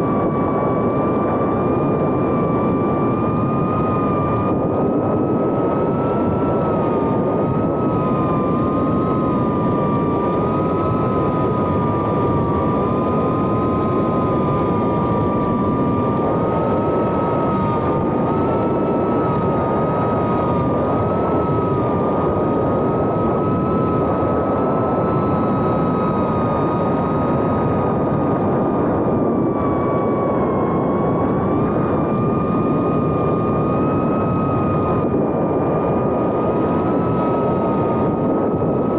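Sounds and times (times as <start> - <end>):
quadcopter motors whining: 0.0 - 38.9
steady rushing noise: 0.0 - 38.9.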